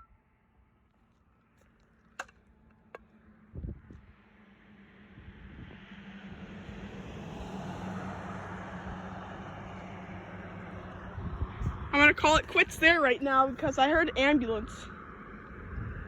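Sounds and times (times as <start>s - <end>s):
vehicle engine and tyre noise: 0.3s - 16.0s.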